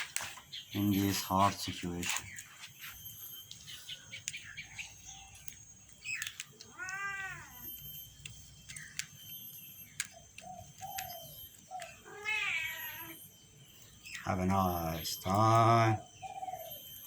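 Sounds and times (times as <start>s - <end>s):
faint chirping notes and clicks: 0.0s - 17.0s
cat meowing: 6.7s - 7.7s, 12.0s - 13.2s.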